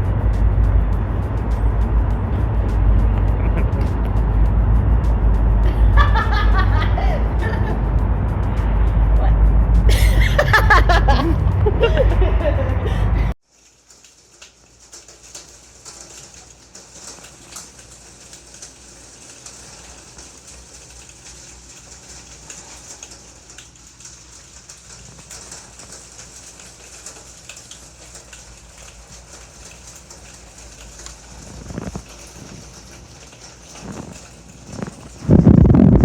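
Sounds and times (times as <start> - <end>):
water hiss: 13.5 - 35.5.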